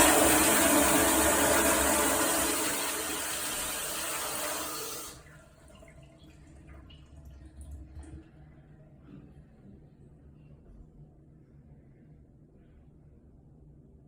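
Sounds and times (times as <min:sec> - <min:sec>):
toilet flushing: 0:00.0 - 0:08.5
water trickling and dripping: 0:04.9 - 0:08.4.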